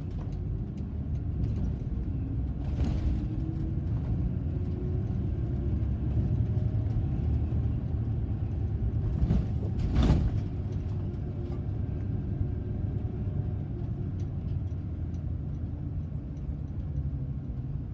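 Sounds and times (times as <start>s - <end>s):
car engine and road rumble: 0.0s - 17.9s.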